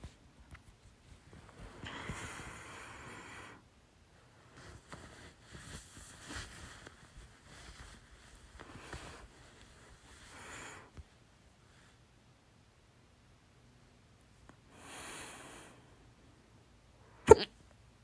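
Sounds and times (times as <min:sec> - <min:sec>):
woman breathing: 0:01.6 - 0:03.7, 0:10.1 - 0:11.0, 0:14.7 - 0:16.2
woman hiccuping: 0:17.2 - 0:17.6.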